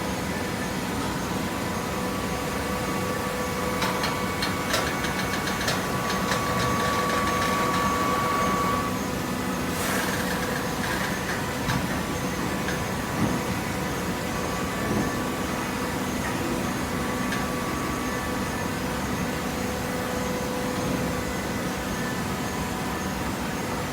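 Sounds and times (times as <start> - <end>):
high machine whine: 0.2 - 11.4.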